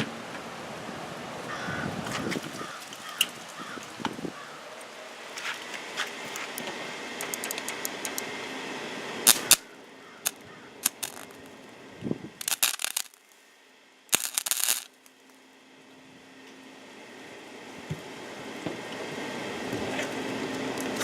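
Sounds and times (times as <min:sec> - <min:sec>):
welder arc crackling: 0:09.2 - 0:11.7, 0:12.4 - 0:13.4, 0:14.1 - 0:15.4.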